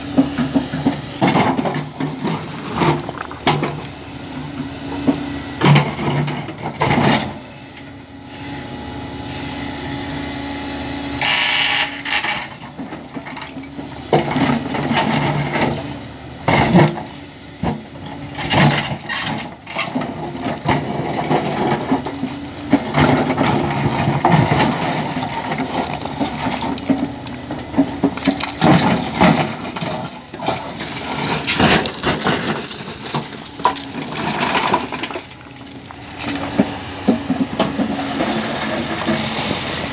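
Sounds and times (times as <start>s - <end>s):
diesel engine droning: 0.0s - 39.9s
bucket scraping against stone: 0.7s - 4.0s, 22.8s - 39.9s
rock cracking and tumbling: 2.2s - 3.9s.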